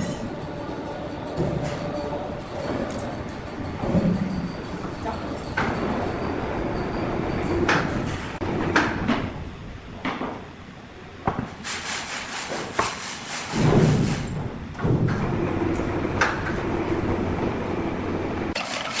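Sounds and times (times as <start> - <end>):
sawmill machinery humming: 15.3 - 19.0.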